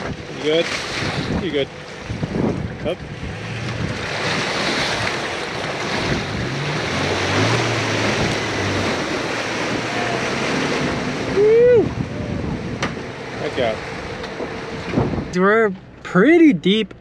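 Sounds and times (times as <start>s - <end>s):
water splashing: 0.0s - 15.5s
truck engine pulling under load: 3.2s - 16.0s.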